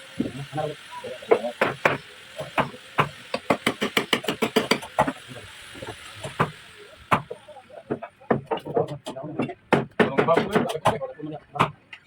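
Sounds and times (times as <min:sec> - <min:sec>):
hammer striking hardwood: 0:06.3 - 0:11.0.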